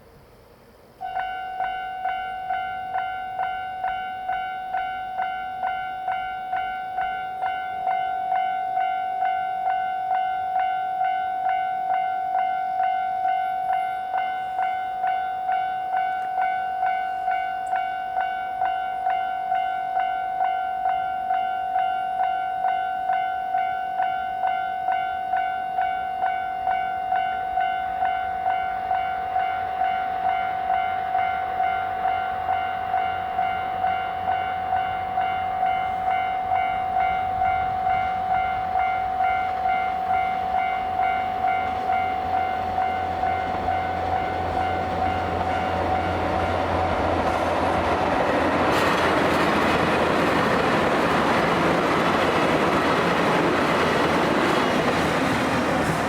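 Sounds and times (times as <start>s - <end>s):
level-crossing warning bell: 1.0s - 56.0s.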